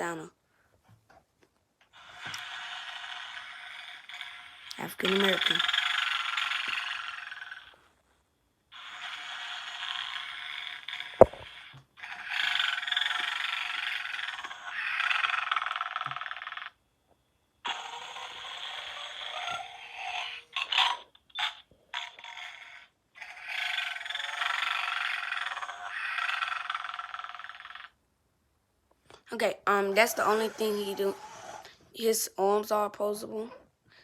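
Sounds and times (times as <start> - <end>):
recorded snoring through tinny speaker: 2.0 - 7.8, 8.7 - 16.8, 17.6 - 28.0, 29.2 - 31.8.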